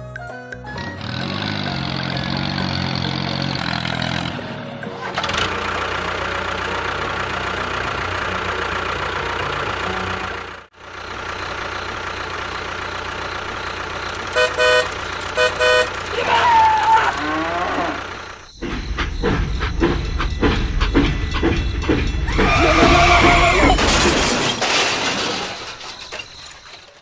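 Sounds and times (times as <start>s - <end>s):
vehicle engine running: 0.6s - 24.3s
short horn beeps: 14.2s - 16.1s.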